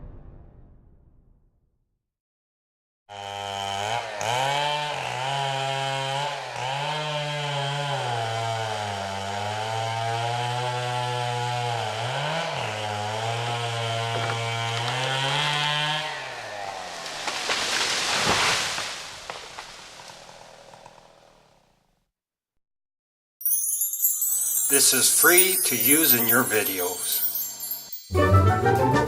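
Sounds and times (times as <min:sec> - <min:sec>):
chainsaw cutting through tree: 0:03.1 - 0:21.7, 0:24.0 - 0:28.0.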